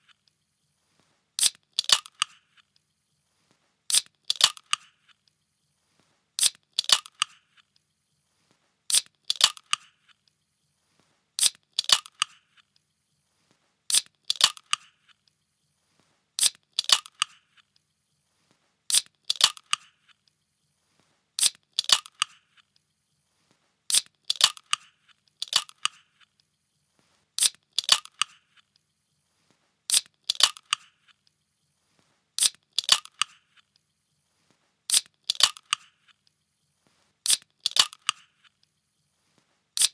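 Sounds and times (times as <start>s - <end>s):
drink can opening crack: 25.4s - 26.0s, 29.9s - 30.9s, 34.9s - 35.9s, 37.3s - 38.2s.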